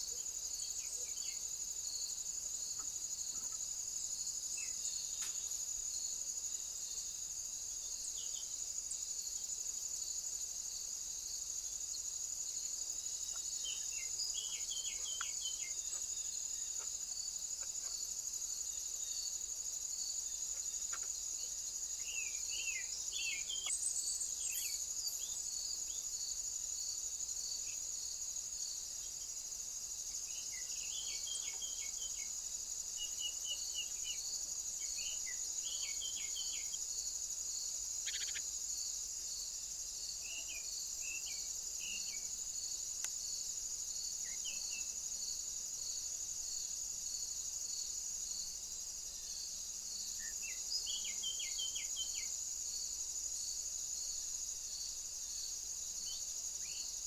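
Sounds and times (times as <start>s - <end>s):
high-pitched insect trilling: 37.9s - 38.6s.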